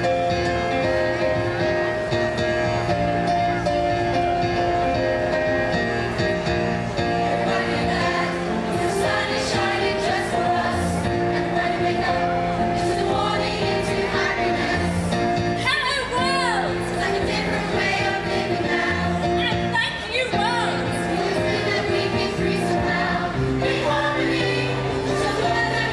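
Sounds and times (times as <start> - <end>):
instrumental accompaniment: 0.0 - 25.9
voices singing: 7.3 - 15.2, 16.2 - 19.7, 20.4 - 25.9.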